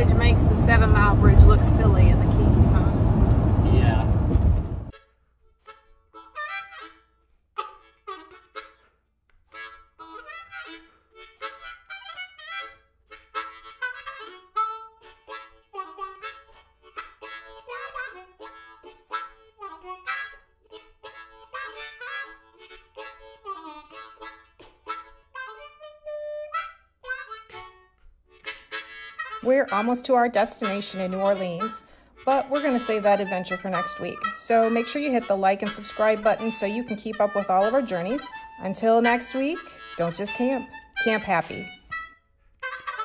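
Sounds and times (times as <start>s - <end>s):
harmonica melody: 0.0s - 43.0s.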